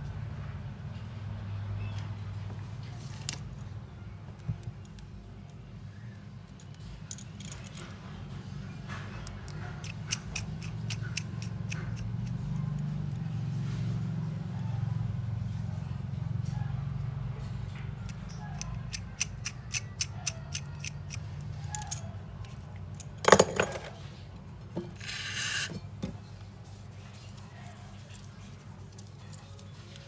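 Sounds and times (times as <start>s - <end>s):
small tools clicking on phone: 9.8s - 12.4s, 18.1s - 22.0s
scraping: 23.2s - 24.0s.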